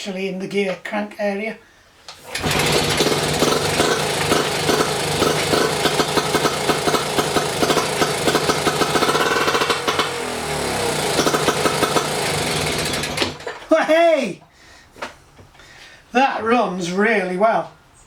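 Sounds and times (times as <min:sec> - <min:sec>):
outboard motor running: 0:02.3 - 0:13.7.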